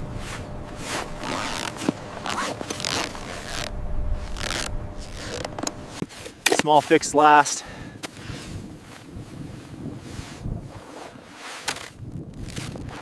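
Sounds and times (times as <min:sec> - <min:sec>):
rasping scrapes of gear handling: 0:00.2 - 0:07.1, 0:10.0 - 0:13.0.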